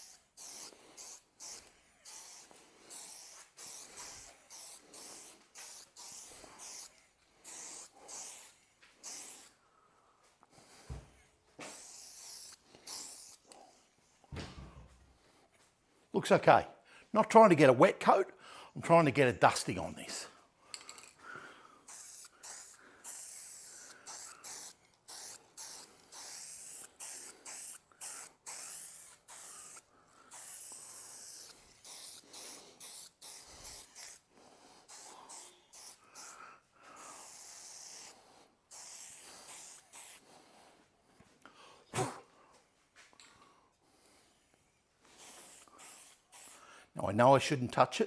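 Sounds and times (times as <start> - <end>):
spray paint can hissing: 0.0 - 9.6, 11.6 - 13.5, 21.8 - 40.6, 45.1 - 46.7.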